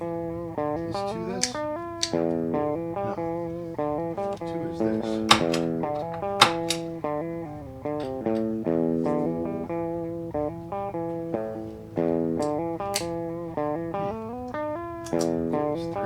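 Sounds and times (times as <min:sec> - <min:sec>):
electric guitar picked notes: 0:00.0 - 0:16.0.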